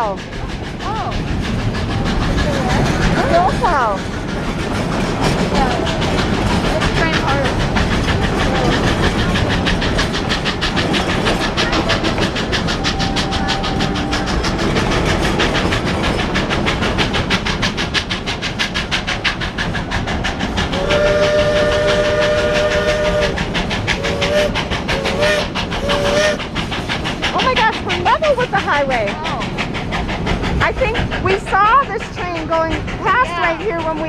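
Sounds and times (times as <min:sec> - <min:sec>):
steam train exhaust chuffs: 0:00.0 - 0:34.0
steam whistle blowing: 0:20.8 - 0:23.4, 0:24.0 - 0:26.4.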